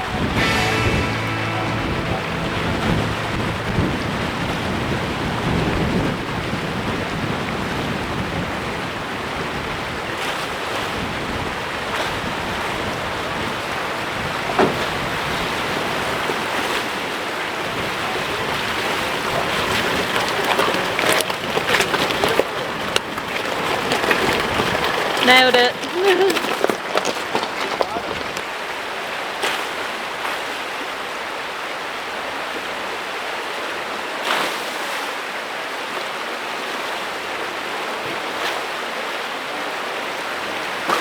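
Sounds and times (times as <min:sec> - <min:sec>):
river water rushing and splashing: 0:15.0 - 0:41.0.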